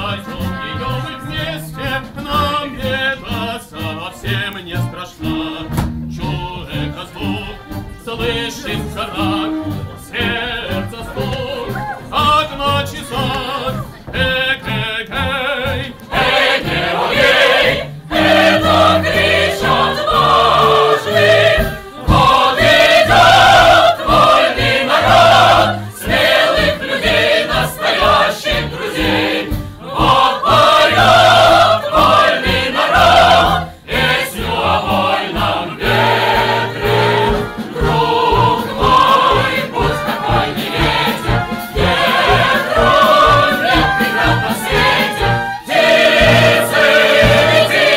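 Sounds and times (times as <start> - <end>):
choir singing: 0.0 - 47.9
instrumental accompaniment: 0.0 - 47.9.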